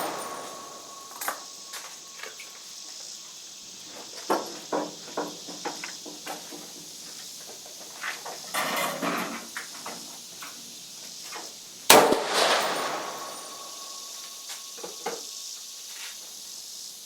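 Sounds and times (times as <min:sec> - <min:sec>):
rifle shot echoing: 0:00.0 - 0:01.6, 0:11.9 - 0:14.4.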